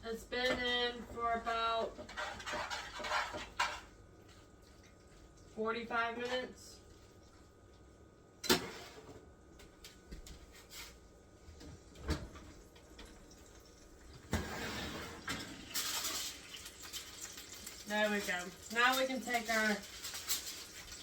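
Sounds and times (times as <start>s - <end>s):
rustling and scraping: 2.0s - 3.9s, 10.3s - 11.0s.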